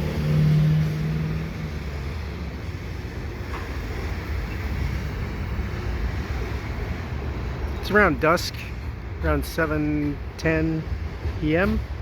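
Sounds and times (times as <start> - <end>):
freight train rumbling on rails: 0.0 - 12.0.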